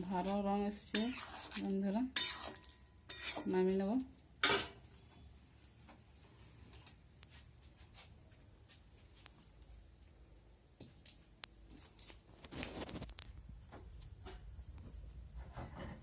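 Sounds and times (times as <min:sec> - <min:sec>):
utensils scraping a cooking pot: 0:00.0 - 0:04.8.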